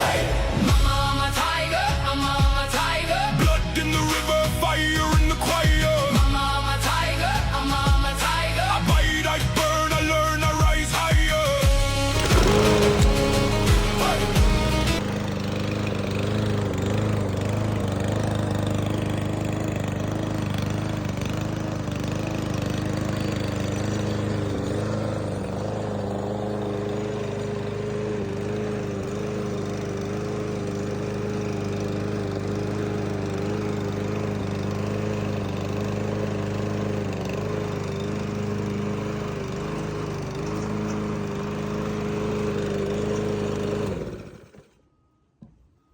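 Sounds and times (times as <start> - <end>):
lawn mower engine running: 0.0 - 44.8.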